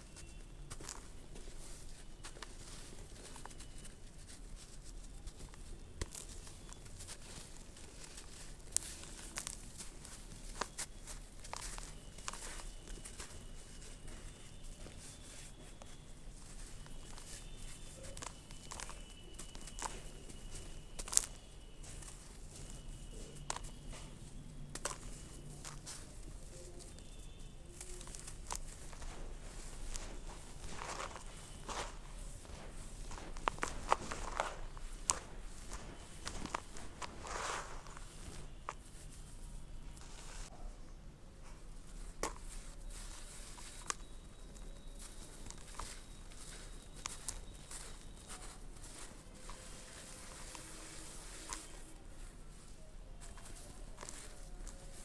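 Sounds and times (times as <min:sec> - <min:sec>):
dirt crumbling onto floor: 0:06.0 - 0:24.1, 0:24.7 - 0:38.9.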